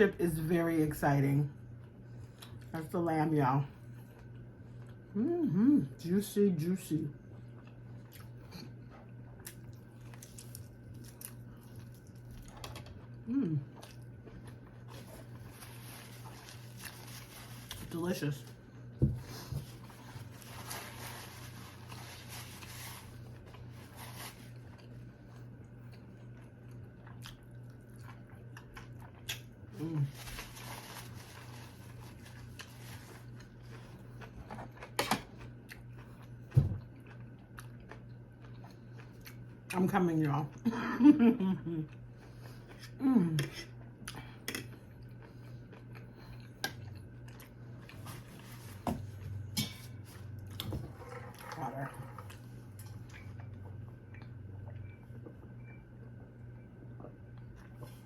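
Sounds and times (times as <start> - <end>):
low steady hum: 0.0 - 58.0
quiet eating sounds: 0.8 - 58.0
chewing food: 7.2 - 17.9, 19.8 - 30.4, 31.4 - 40.6, 43.6 - 48.5, 50.2 - 58.0.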